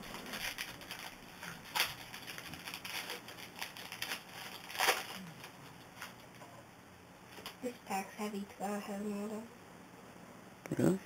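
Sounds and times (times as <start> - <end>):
card pack wrapper crinkling: 0.0 - 6.4
cards rustling in hands: 0.0 - 6.4
sharp wrapper crackle: 0.0 - 6.4.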